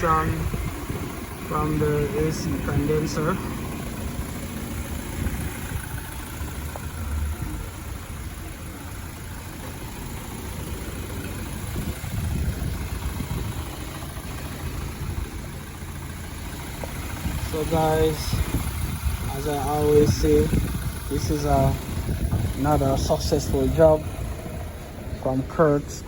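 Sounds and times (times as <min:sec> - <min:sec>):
air conditioning running: 0:00.0 - 0:06.2
car engine idling: 0:00.0 - 0:26.0.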